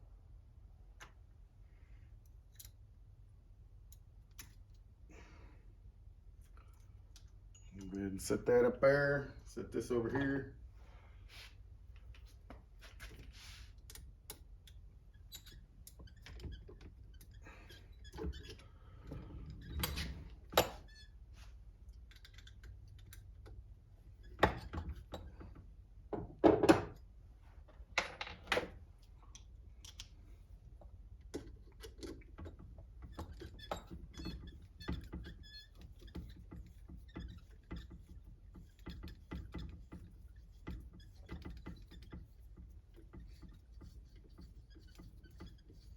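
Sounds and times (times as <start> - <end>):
small parts and tools clicking: 2.2 - 2.8, 21.9 - 23.6, 28.2 - 30.3.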